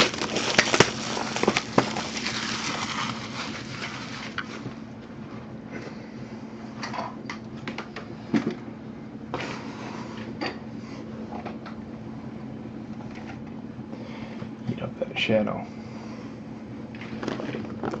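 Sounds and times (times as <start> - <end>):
cards rustling and clicking: 0.0 - 4.7.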